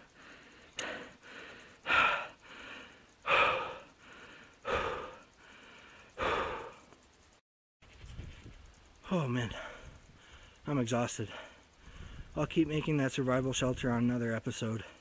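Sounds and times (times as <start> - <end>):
man breathing hard: 0.0 - 7.0, 9.5 - 10.6, 11.3 - 12.4.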